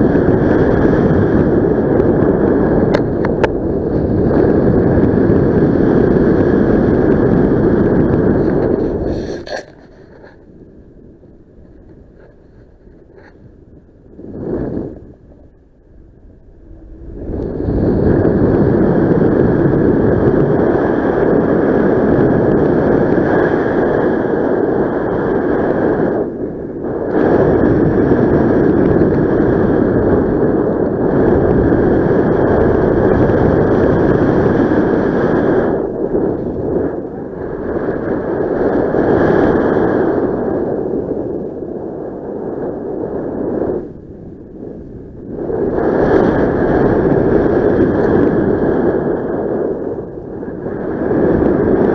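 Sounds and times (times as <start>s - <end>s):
wind buffeting microphone: 0.0s - 51.9s.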